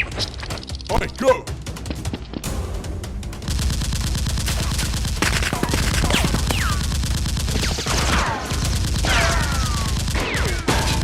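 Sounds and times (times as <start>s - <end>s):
rapid automatic gunfire: 3.4s - 11.0s.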